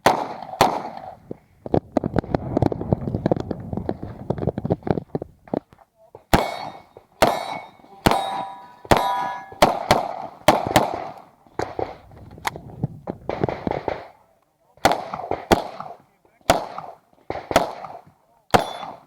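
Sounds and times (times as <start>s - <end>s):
pistol gunshots: 0.0s - 1.2s, 6.3s - 12.1s, 13.3s - 14.2s, 14.8s - 19.0s
steel target ringing clang: 6.4s - 9.7s, 18.6s - 19.0s.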